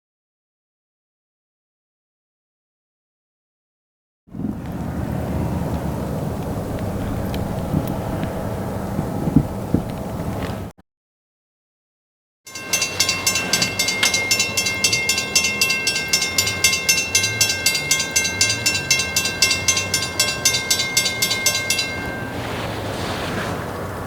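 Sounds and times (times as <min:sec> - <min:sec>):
railroad crossing bell ringing: 0:04.6 - 0:10.7, 0:12.5 - 0:24.0.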